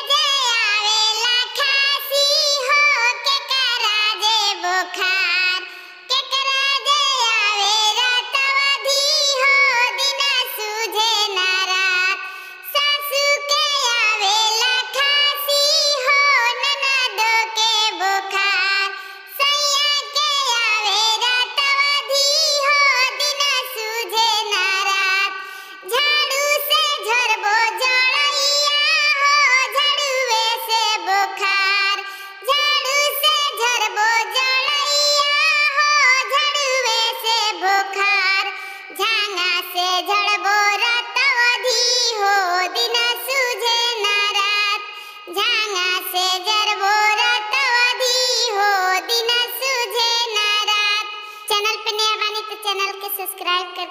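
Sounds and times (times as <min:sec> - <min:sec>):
high voice singing folk song: 0:00.0 - 0:53.9.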